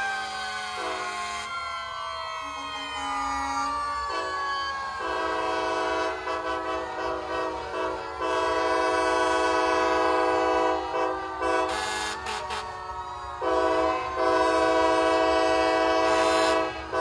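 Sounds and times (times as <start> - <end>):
multi-chime train horn: 5.0 - 12.7, 13.4 - 17.0.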